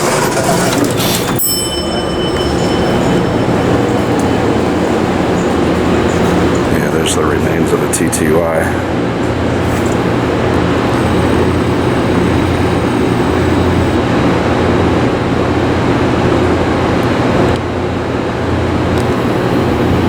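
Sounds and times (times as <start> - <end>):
loud rumbling noise: 2.0 - 16.8, 18.0 - 20.0
low hum: 9.6 - 14.0.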